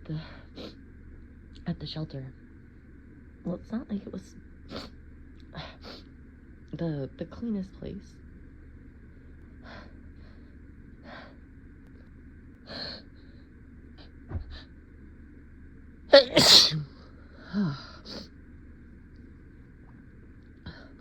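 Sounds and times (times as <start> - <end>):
person sneezing: 16.1 - 16.9.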